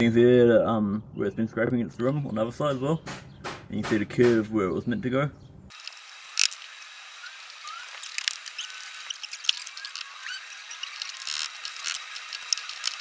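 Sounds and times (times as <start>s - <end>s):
faint squeaks: 7.2s - 13.0s
small metal parts rattling: 7.6s - 13.0s.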